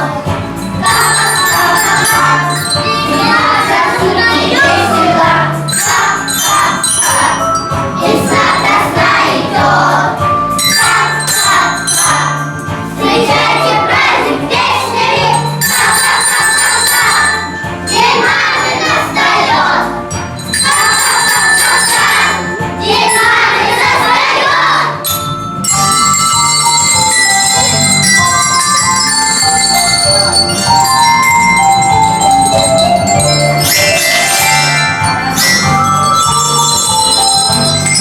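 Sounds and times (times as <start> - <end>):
voices singing together: 0.0 - 20.0, 20.6 - 25.0
sleigh bells ringing: 0.0 - 38.0.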